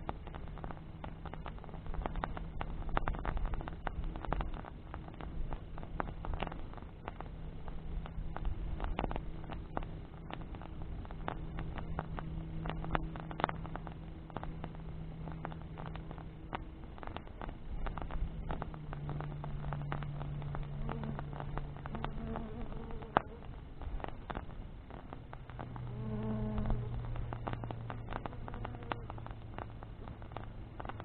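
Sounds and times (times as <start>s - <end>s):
bonfire crackling and popping: 0.0s - 31.0s
faint steady hum: 0.0s - 31.0s.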